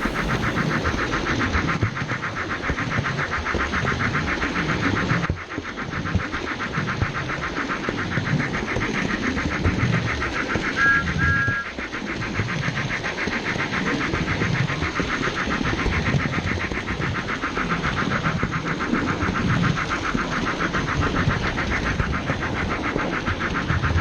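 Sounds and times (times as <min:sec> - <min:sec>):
toy train motor hum: 0:00.0 - 0:04.0.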